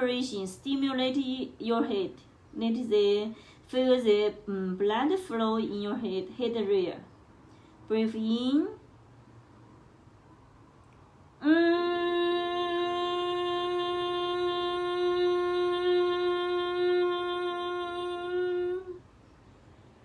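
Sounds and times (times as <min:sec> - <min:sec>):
woman humming a long note: 0:11.4 - 0:19.0.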